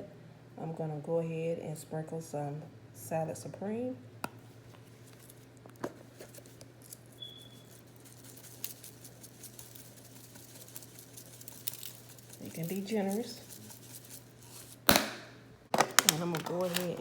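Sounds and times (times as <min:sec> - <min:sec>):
faint low hum: 0:00.0 - 0:17.0
seasoning granules pattering: 0:06.2 - 0:14.9.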